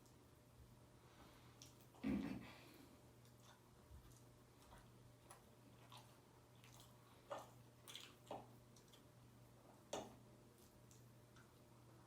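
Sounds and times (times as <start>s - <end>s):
low steady hum: 0.0s - 12.0s
wet chewing mouth clicks: 3.2s - 9.2s.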